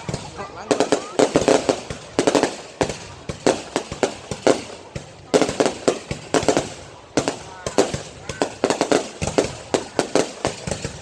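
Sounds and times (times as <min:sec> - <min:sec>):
fireworks exploding: 0:00.0 - 0:11.0.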